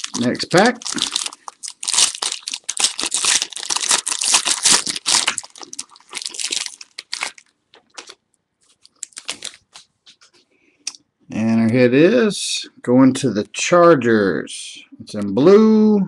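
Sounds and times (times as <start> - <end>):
foil wrapper tearing and crinkling: 0.0 - 9.8.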